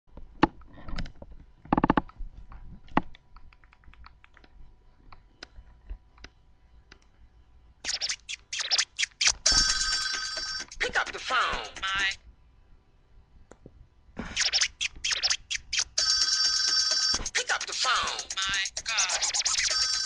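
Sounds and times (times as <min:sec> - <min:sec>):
phone ringtone: 0:09.4 - 0:10.8, 0:14.4 - 0:17.4, 0:18.2 - 0:20.0.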